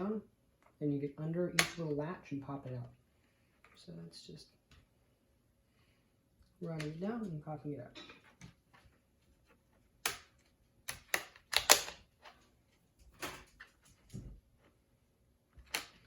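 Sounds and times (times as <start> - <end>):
plastic latches snapping: 10.9 - 12.0.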